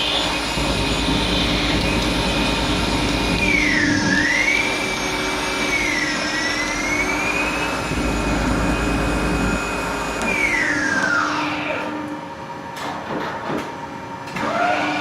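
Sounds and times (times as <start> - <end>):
lathe spindle whine: 0.0 - 12.7.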